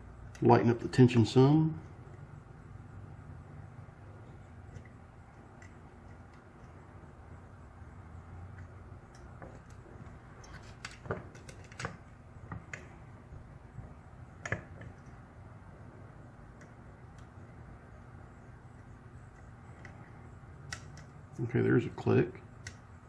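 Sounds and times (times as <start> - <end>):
lock pick scraping and clicking in lock: 10.4 - 12.8.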